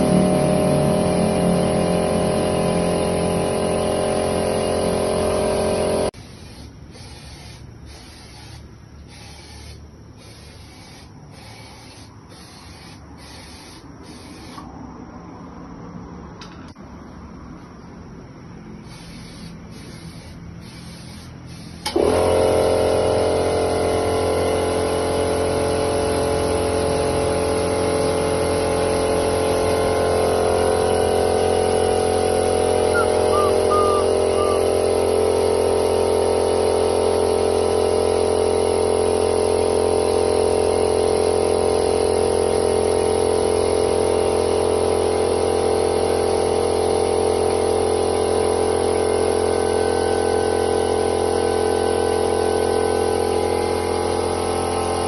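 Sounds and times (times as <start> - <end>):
motor machine humming: 0.0 - 14.6, 18.9 - 38.0.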